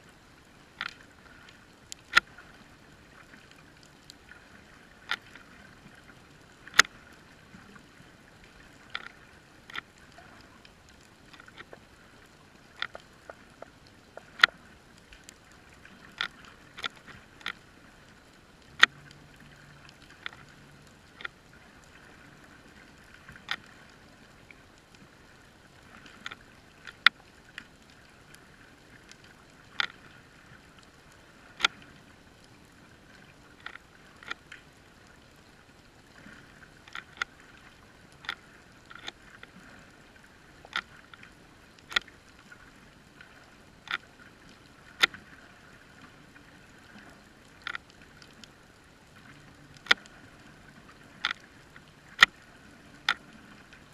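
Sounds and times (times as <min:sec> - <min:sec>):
faint steady hiss: 0:00.0 - 0:53.9
sharp clicks and ticks: 0:12.8 - 0:14.6.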